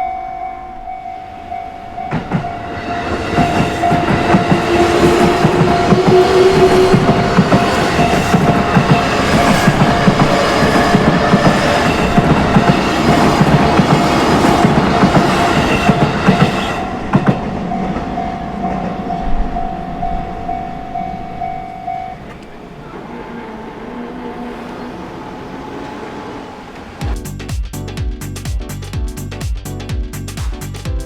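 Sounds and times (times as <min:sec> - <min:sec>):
crossing warning bell ringing: 0:00.0 - 0:23.0
train wheel clatter: 0:02.0 - 0:23.7.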